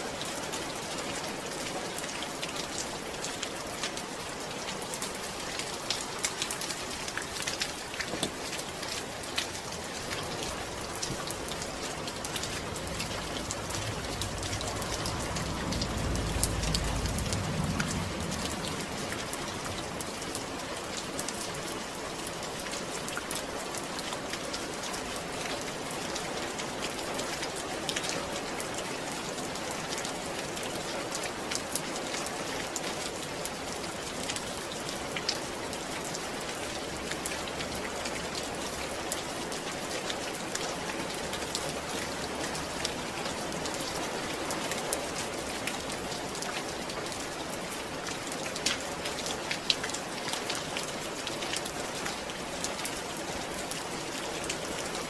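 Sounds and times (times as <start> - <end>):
raindrops striking sharply: 0.0 - 36.3
steady rain: 0.0 - 55.0.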